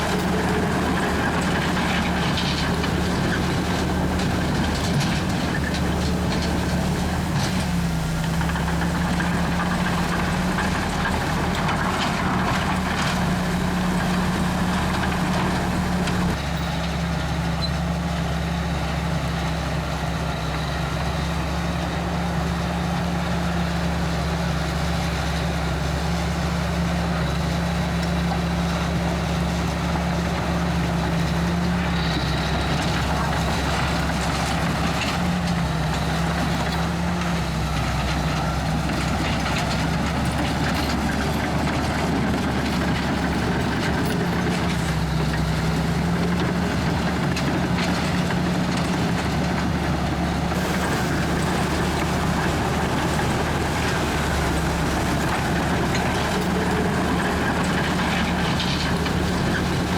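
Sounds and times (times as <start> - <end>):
bulldozer diesel engine running: 0.0 - 59.9
clattering noise: 50.5 - 59.9.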